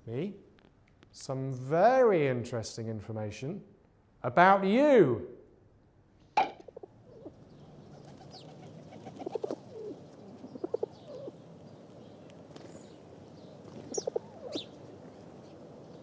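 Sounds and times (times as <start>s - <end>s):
low pulsing bird calls: 6.8s - 16.0s
high bird chirps: 12.0s - 14.8s.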